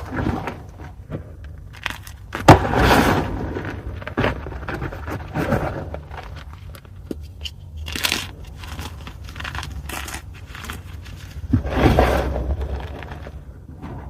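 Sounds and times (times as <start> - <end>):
chalk being crushed: 1.4 - 3.4, 4.3 - 13.3.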